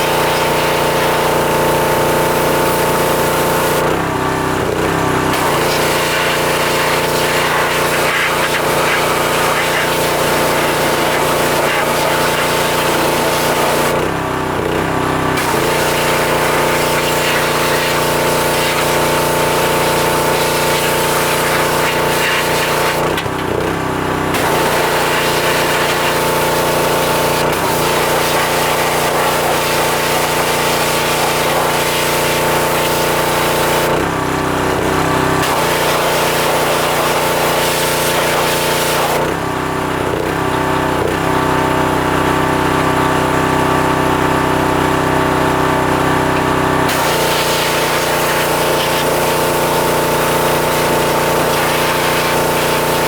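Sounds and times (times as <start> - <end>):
pressure washer running: 0.0 - 53.0
water spray hissing: 5.4 - 14.0, 15.4 - 23.1, 46.9 - 53.0.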